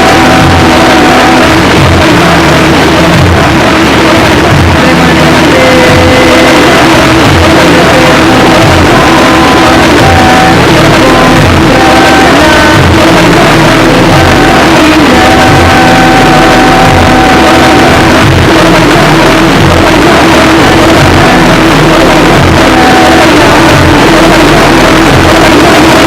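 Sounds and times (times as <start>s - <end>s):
low bass notes: 0.0s - 26.0s
low drone: 0.0s - 26.0s.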